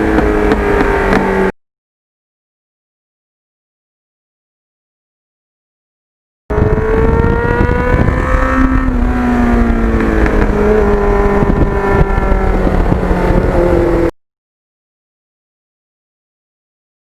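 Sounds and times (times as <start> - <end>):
motorcycle engine running: 0.0 - 1.5, 6.5 - 14.1
wind rumble on microphone: 6.5 - 14.1.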